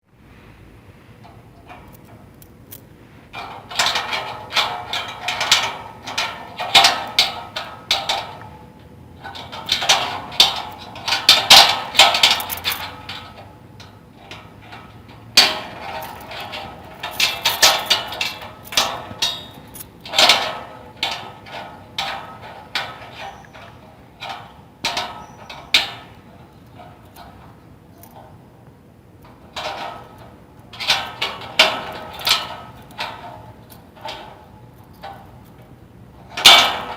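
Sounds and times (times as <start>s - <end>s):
padlock rattling and clicking: 1.2s - 28.5s.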